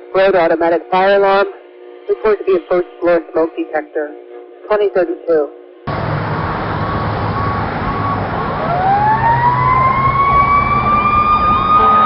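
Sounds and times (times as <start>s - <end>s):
fire truck siren wailing: 5.9s - 12.0s
road noise: 5.9s - 12.0s
truck engine: 5.9s - 12.0s.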